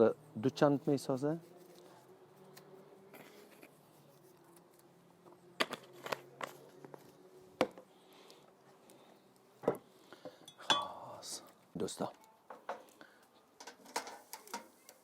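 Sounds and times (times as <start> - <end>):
objects clicking and knocking: 13.6 - 14.8.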